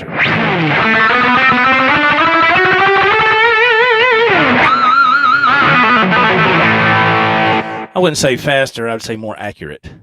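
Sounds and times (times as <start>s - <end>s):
overdriven electric guitar lead: 0.0s - 8.0s.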